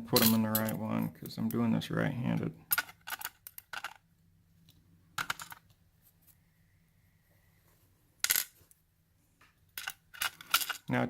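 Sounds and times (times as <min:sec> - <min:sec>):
small pins clattering into tray: 0:09.8 - 0:10.9.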